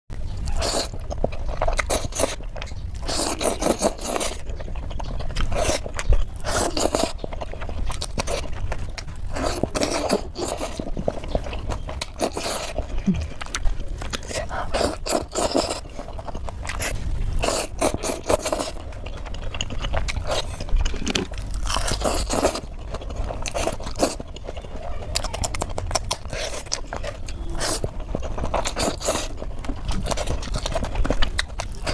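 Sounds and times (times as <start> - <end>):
chewing and biting noodles: 0.3 - 31.9.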